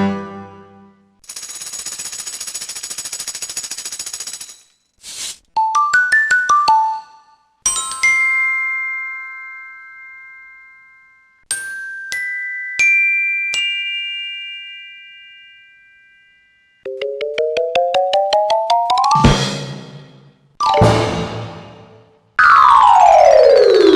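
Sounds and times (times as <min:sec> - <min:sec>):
glockenspiel-like chimes: 0:05.9 - 0:17.4, 0:20.6 - 0:21.4.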